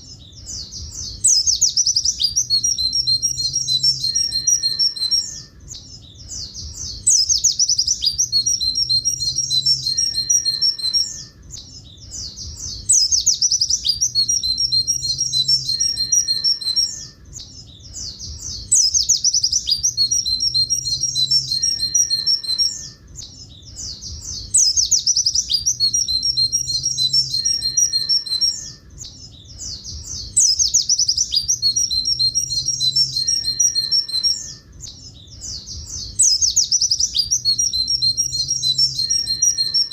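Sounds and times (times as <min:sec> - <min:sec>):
bird twittering song: 0:00.0 - 0:39.9.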